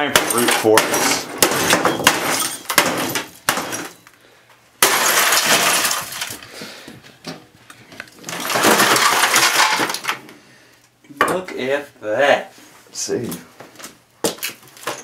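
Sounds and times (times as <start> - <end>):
computer being smashed: 0.0 - 4.0, 4.8 - 6.4, 8.2 - 10.2
glass and plastic breaking: 0.0 - 4.1, 4.8 - 6.4, 8.1 - 10.2.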